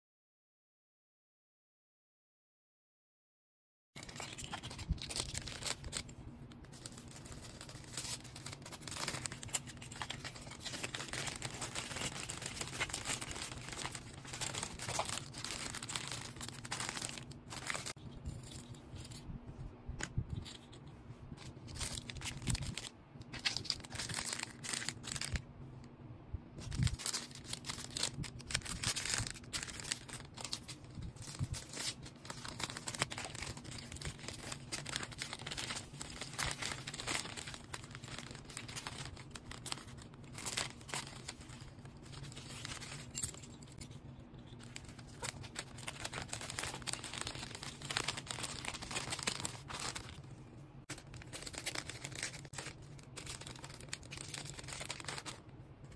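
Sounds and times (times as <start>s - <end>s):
packaging tearing: 4.0s - 6.1s, 6.7s - 18.0s, 21.6s - 25.4s, 26.6s - 43.3s, 44.6s - 50.2s, 50.9s - 55.4s
wrapping material crackling: 4.0s - 18.0s, 21.4s - 25.5s, 26.6s - 55.9s.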